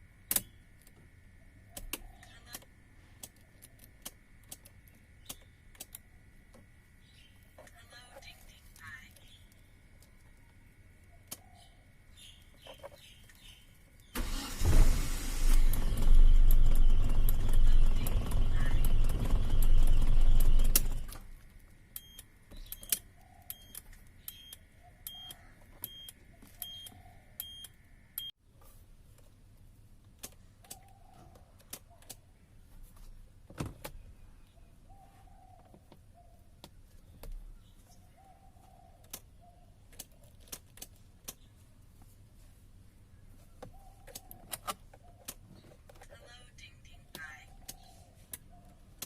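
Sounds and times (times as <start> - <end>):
faint regular beeping: 16.2 - 28.4.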